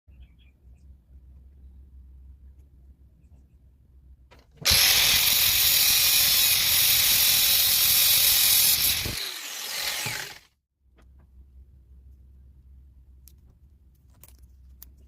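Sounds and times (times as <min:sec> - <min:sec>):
hand tool boring into wood: 0:04.6 - 0:10.5.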